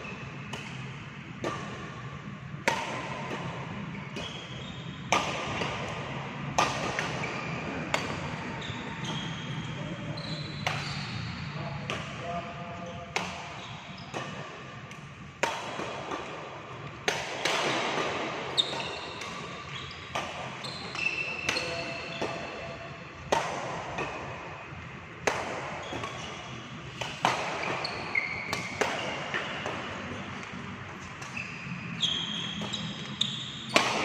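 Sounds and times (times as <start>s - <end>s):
racket hitting shuttlecock: 0.1s - 9.8s, 10.6s - 11.2s, 13.1s - 34.0s
shoe squeaks on court floor: 3.9s - 5.1s, 7.1s - 11.4s, 13.6s - 14.1s, 18.5s - 22.7s, 25.8s - 26.6s, 27.6s - 30.3s, 31.0s - 33.8s.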